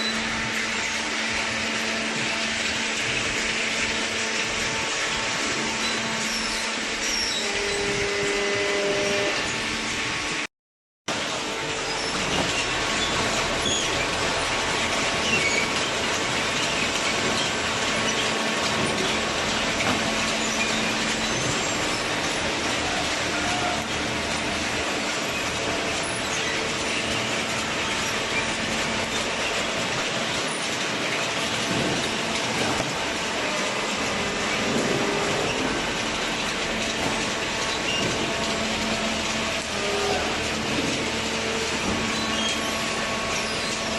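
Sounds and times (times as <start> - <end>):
baler mechanical noise: 0.0 - 10.5, 11.1 - 43.9
baling machinery running: 0.0 - 10.5, 11.1 - 43.9
high metallic squeaks: 5.8 - 9.6, 11.7 - 14.2, 20.0 - 24.4, 33.3 - 43.9.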